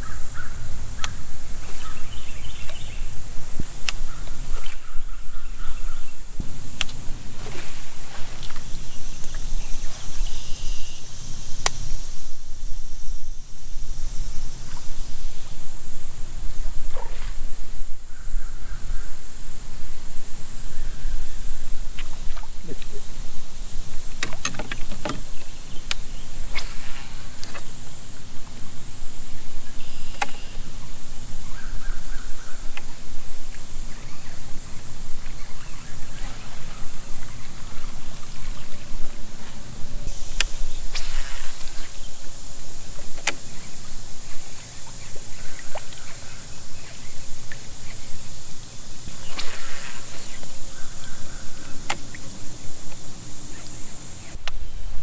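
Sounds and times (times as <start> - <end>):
steady high hiss: 0.0 - 55.0
gear knocking against boat: 24.0 - 26.8.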